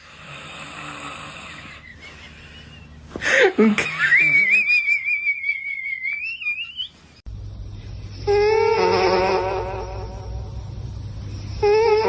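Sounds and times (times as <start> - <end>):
steady low hum: 0.0 - 12.0
wavering pitched tone: 7.7 - 12.0
whistling wheeze of sleeper: 11.3 - 12.0.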